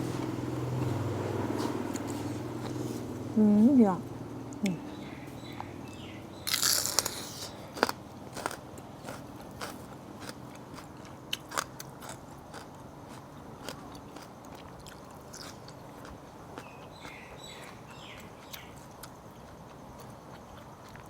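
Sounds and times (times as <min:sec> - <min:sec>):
crunchy vegetable bite: 0:05.6 - 0:19.2.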